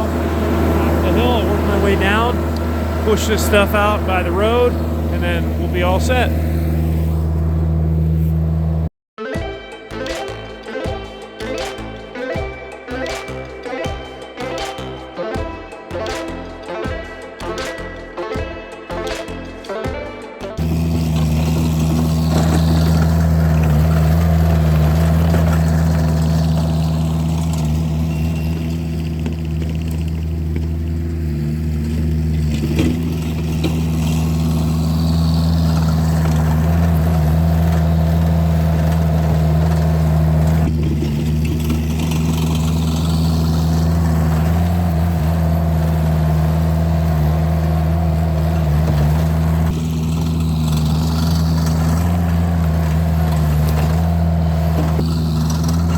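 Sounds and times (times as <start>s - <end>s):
loader engine running: 0.0s - 8.9s, 20.4s - 55.9s.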